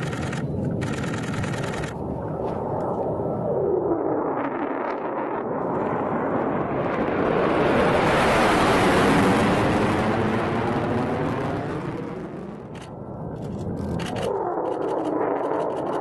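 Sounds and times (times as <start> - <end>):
jet engine roaring past: 0.0 - 16.0.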